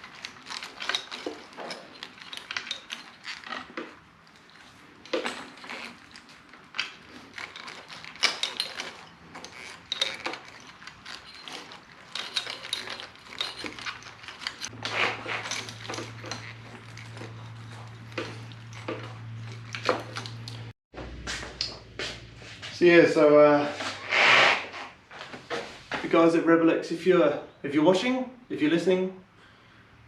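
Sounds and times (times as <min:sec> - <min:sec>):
wiring clicks and rattles: 0:00.0 - 0:20.8.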